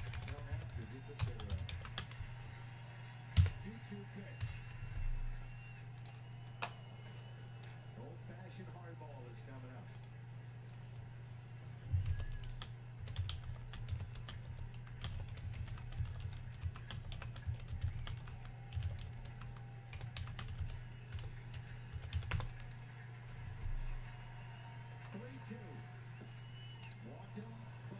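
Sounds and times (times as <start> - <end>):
computer keyboard typing: 0.0 - 2.5, 3.3 - 6.8, 7.6 - 7.8, 9.9 - 11.1, 11.8 - 24.1, 26.7 - 27.6
low steady hum: 0.0 - 27.9.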